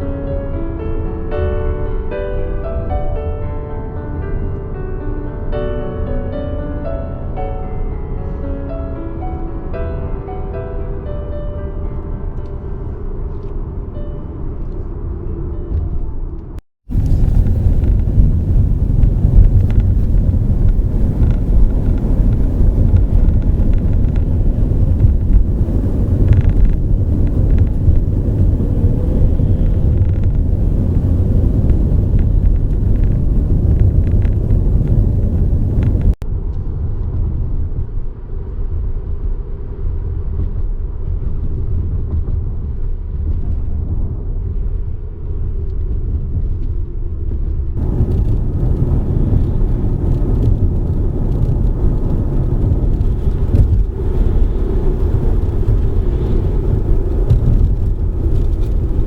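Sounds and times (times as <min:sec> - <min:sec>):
car engine and road noise: 0:12.4 - 0:43.2, 0:47.7 - 0:59.0.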